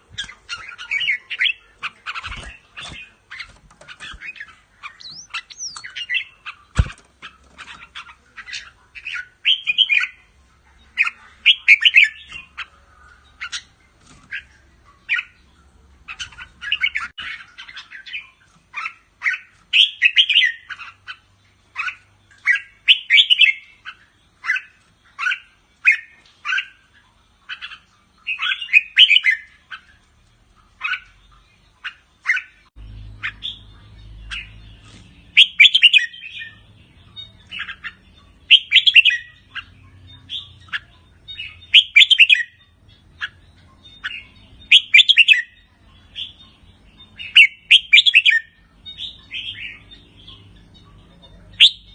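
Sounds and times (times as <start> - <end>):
rapid chattering bird calls: 0.0 - 30.0
bird song phrases: 0.0 - 51.9.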